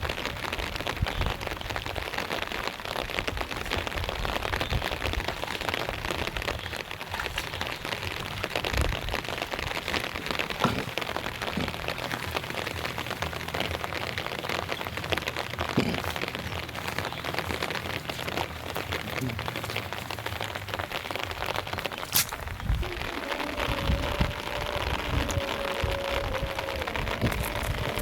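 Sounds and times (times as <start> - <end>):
steady rain falling: 0.0 - 28.0.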